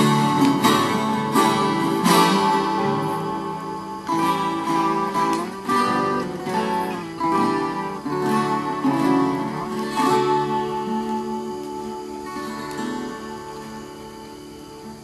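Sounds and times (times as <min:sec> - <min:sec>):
acoustic guitar strumming and plucking: 0:00.0 - 0:15.0.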